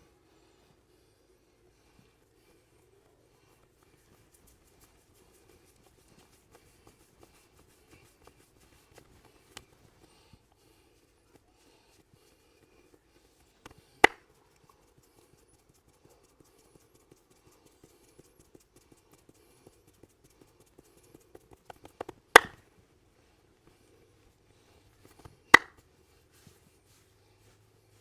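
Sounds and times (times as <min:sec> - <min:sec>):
hands smacking head: 0:13.6 - 0:22.7, 0:25.1 - 0:25.9
light tapping: 0:16.4 - 0:22.6.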